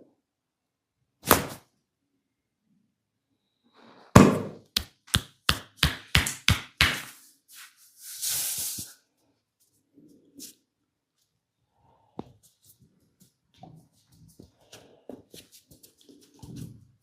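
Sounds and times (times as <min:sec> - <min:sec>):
percussive massage strikes: 0:04.2 - 0:07.1.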